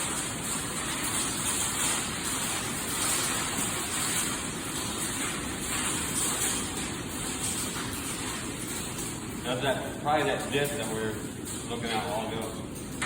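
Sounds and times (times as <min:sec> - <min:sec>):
hail and heavy rain on building: 0:00.0 - 0:13.0.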